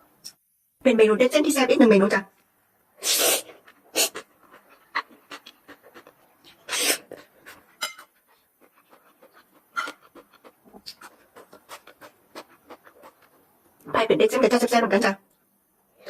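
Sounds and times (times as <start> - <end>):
chewing clicks and smacks: 4.4 - 7.6, 8.6 - 13.4.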